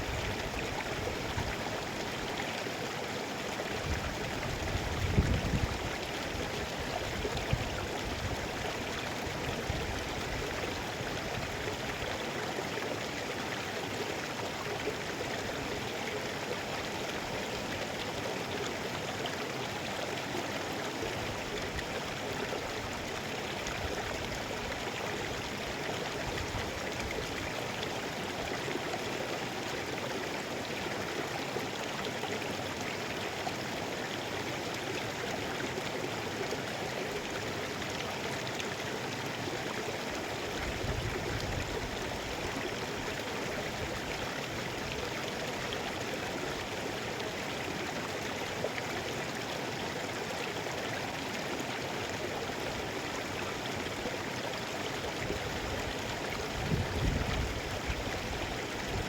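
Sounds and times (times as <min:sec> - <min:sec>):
stream flowing over rocks: 0:00.0 - 0:59.0.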